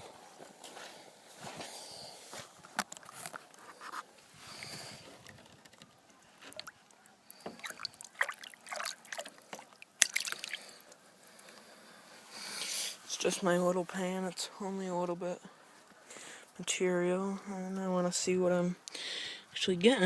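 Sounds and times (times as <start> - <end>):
gravel clicking against a pan: 4.6 - 8.2
water sloshing in a pan: 6.4 - 10.8.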